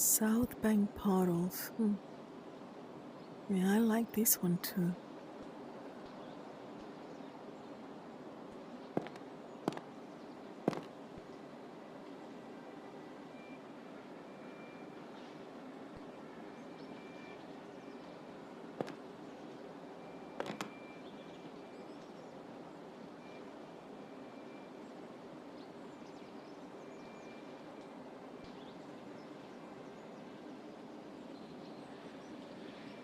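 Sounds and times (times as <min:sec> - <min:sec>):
outdoor ambience: 0:00.0 - 0:33.0
faint bird chirps: 0:25.5 - 0:30.5.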